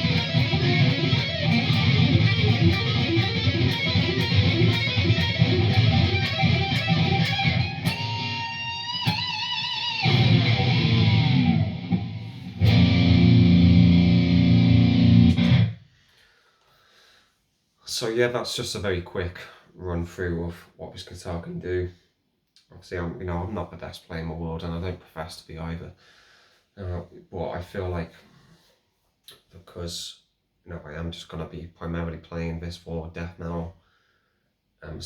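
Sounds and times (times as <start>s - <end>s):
distorted electric guitar: 0.0s - 15.8s.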